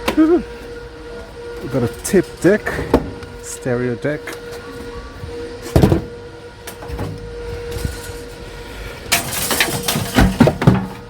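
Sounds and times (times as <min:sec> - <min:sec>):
rattling scrape: 0:07.0 - 0:11.0.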